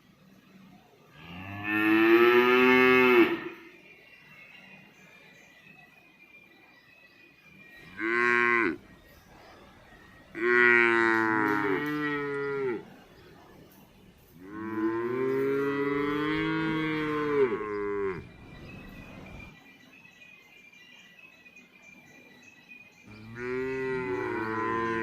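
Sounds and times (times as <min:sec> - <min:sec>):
cow mooing: 0:01.2 - 0:03.6, 0:08.0 - 0:08.8, 0:10.4 - 0:12.8, 0:14.4 - 0:18.3, 0:23.2 - 0:25.0.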